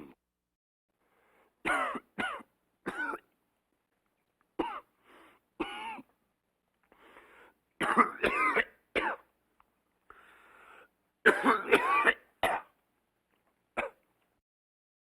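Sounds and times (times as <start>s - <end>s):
person coughing: 1.7s - 3.2s, 5.6s - 6.1s, 7.8s - 9.2s, 11.3s - 12.7s.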